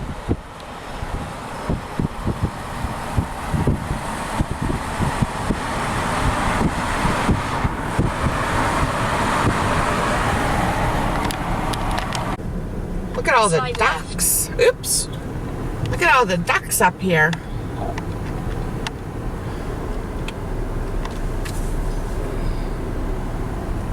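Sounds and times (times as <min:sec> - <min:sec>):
wind buffeting microphone: 0:00.0 - 0:13.2
car road and tyre noise: 0:00.0 - 0:23.9.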